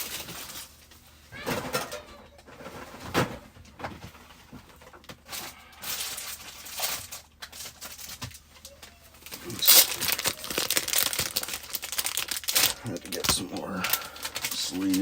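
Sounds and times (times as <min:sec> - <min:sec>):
foil wrapper crinkling and tearing: 0:05.3 - 0:15.0.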